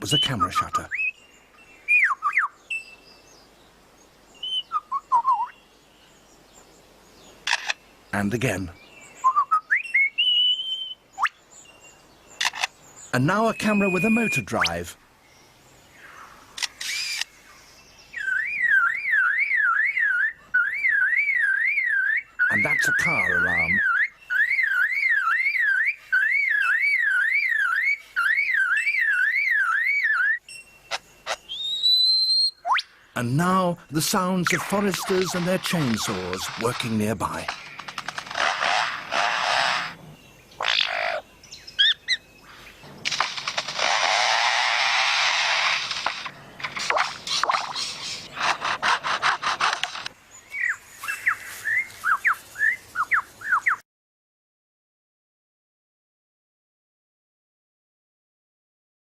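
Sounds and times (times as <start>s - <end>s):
lyrebird whistled notes: 4.4s - 5.6s, 9.2s - 11.4s, 13.4s - 14.8s, 18.2s - 32.9s
sharp clicks: 7.4s - 7.8s, 12.4s - 12.8s, 16.6s - 17.3s, 34.4s - 40.0s, 42.9s - 50.2s
bird mimicking car alarm: 12.4s - 14.8s, 18.2s - 32.9s
lyrebird mimicking chainsaw rasps: 16.6s - 17.3s, 34.1s - 40.0s, 40.6s - 41.2s, 41.8s - 50.1s.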